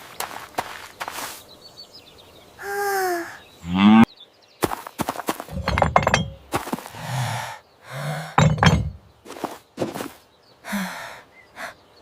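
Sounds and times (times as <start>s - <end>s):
clinks knocks and thuds: 5.4s - 6.9s, 8.4s - 10.0s.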